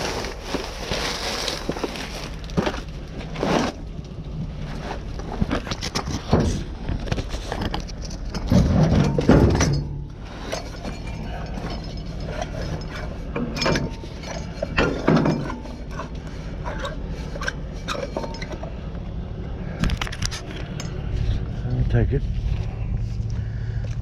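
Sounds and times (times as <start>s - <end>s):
hard objects clattering: 0.0s - 19.2s
heavy rattling: 0.0s - 23.8s.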